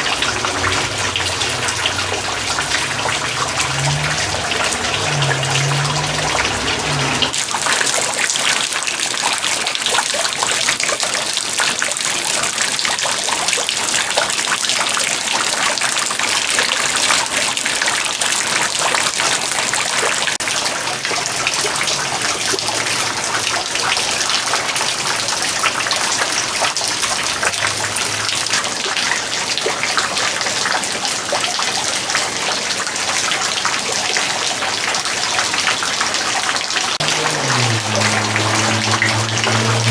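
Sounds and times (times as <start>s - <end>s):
water running: 0.0s - 8.5s, 37.0s - 39.9s.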